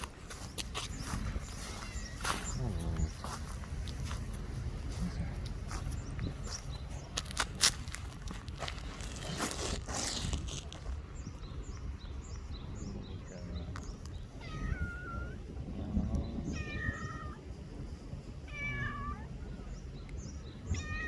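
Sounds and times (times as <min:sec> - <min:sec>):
cat meowing: 0:14.4 - 0:15.5, 0:16.4 - 0:17.5, 0:18.5 - 0:19.3, 0:20.7 - 0:21.0.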